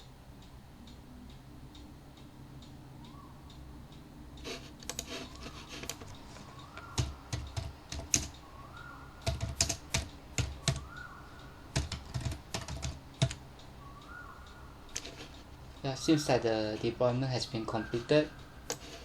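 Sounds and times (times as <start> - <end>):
low steady hum: 0.0 - 19.0
keyboard typing: 4.4 - 13.4, 14.9 - 17.0, 17.8 - 19.0.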